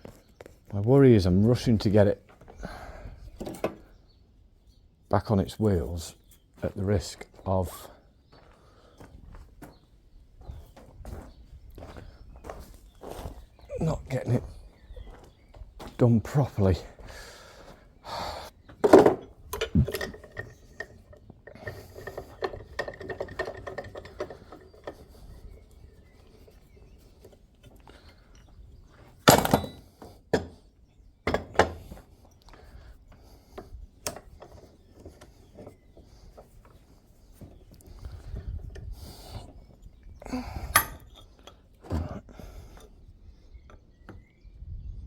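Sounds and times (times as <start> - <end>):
metal tools clinking: 19.5 - 25.1.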